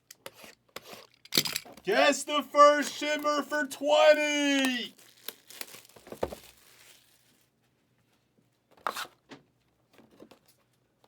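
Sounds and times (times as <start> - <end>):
wrapper tearing and crinkling: 4.9 - 7.5.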